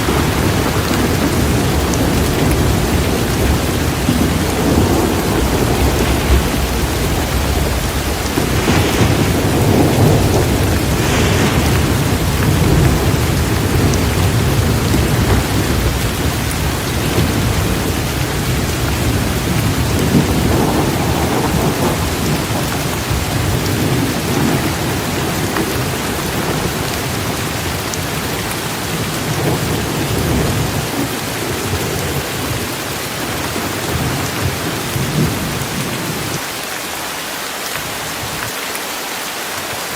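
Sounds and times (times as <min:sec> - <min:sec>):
heavy rain pouring: 0:00.0 - 0:39.9
low rolling rumble: 0:00.1 - 0:24.8.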